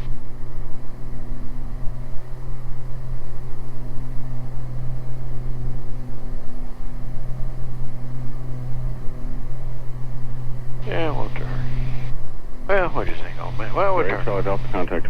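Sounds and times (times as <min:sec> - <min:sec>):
aircraft engines droning: 0:00.0 - 0:15.0.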